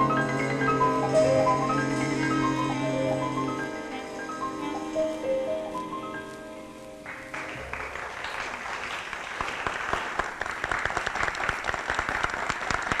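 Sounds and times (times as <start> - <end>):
instrumental music held notes: 0.0 - 7.6
audience applause: 7.0 - 13.0.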